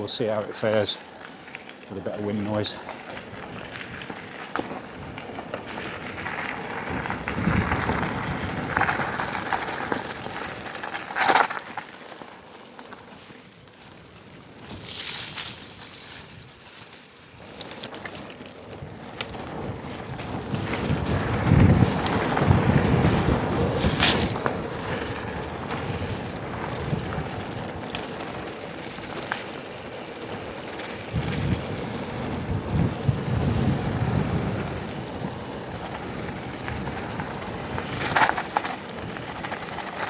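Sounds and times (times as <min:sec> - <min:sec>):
mountain bike riding noise: 0:00.0 - 0:40.0
wind buffeting microphone: 0:03.2 - 0:11.0, 0:19.3 - 0:40.0.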